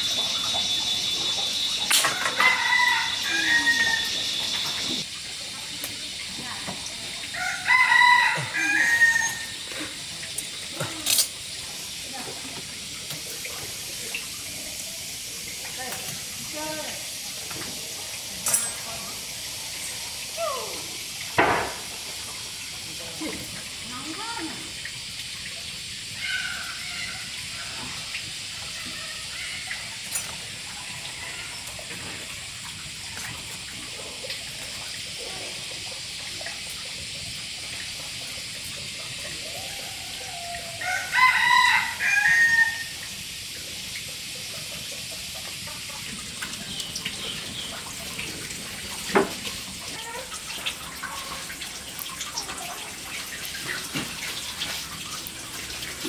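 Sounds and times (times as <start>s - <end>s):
rooster crowing: 0.3s - 5.0s, 7.2s - 10.0s, 39.4s - 43.0s
sharp knock: 21.4s - 21.9s.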